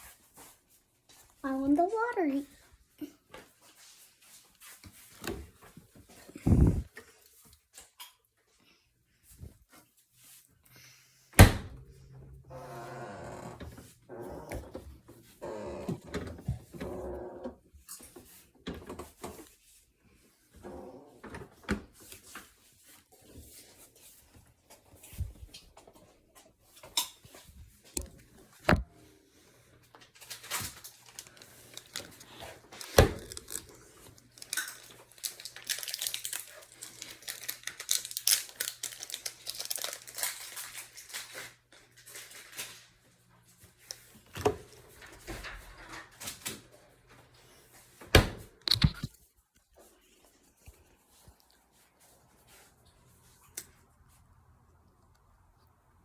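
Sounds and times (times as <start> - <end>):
packaging crinkling and tearing: 30.2 - 42.9.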